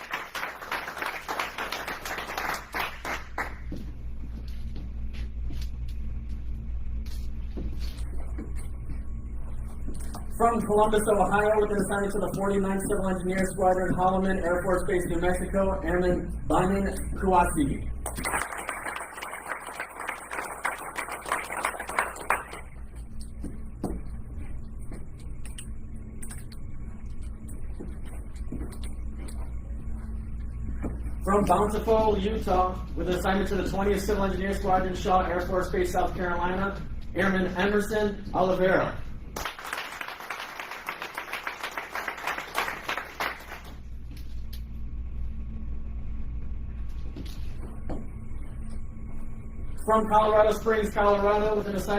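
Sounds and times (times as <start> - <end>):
audience clapping: 0.0 - 3.8, 18.0 - 23.0, 39.4 - 43.8
low hum of hall: 0.0 - 51.9.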